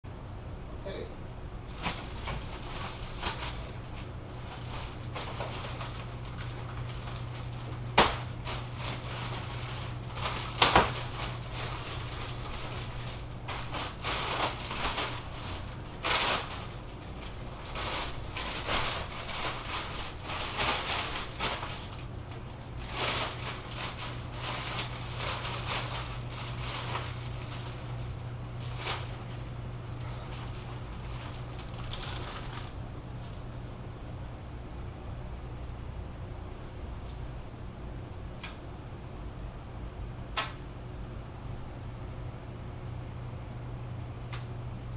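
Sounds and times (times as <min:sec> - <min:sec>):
steady low hum: 0:00.1 - 0:44.9
packaging rustling: 0:01.7 - 0:32.8.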